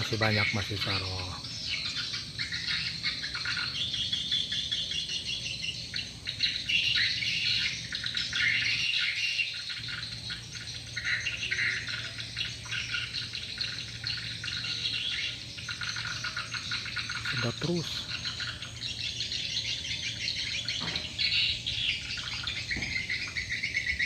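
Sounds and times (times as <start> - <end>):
steady low hum: 0.0 - 24.0
swiftlets twittering: 0.0 - 24.0.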